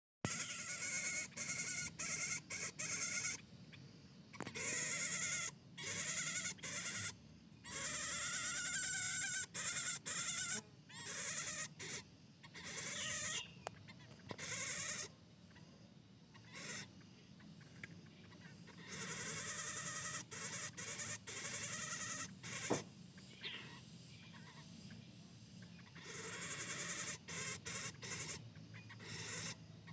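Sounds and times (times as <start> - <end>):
bird giving harsh rasping call: 0.3 - 3.4, 16.4 - 16.9, 25.8 - 29.6.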